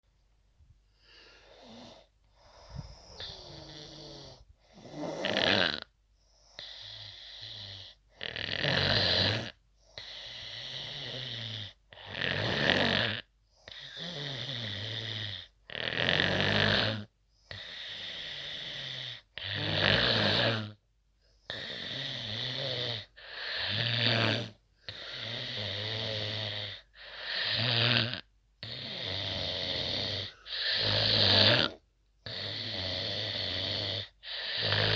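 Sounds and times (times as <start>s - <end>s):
quiet breathing: 0.7s - 5.2s, 24.8s - 25.8s
person snoring: 1.0s - 5.9s, 6.6s - 20.8s, 21.5s - 34.9s.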